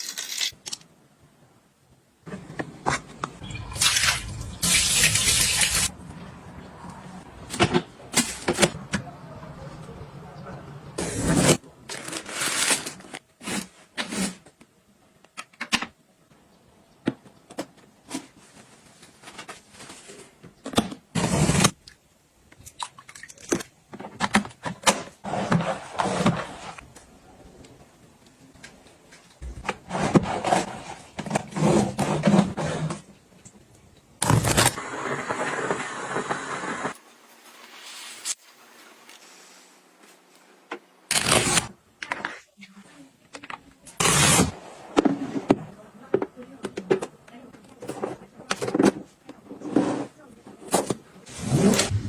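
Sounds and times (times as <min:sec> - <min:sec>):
objects scraping and rustling: 0:02.3 - 0:06.0, 0:18.0 - 0:20.5, 0:23.5 - 0:27.0, 0:28.6 - 0:33.1, 0:41.1 - 0:52.0.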